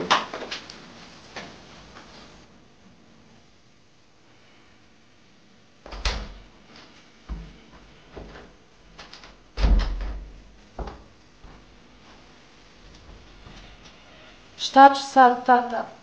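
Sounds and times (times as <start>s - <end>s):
knocks and thumps: 9.6s - 11.7s, 12.8s - 13.8s.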